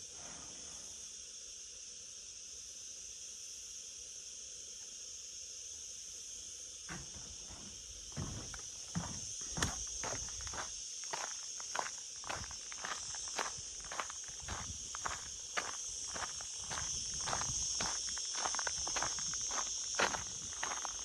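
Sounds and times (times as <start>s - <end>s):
insects chirring: 0.1s - 21.0s
footsteps walking: 6.9s - 21.0s.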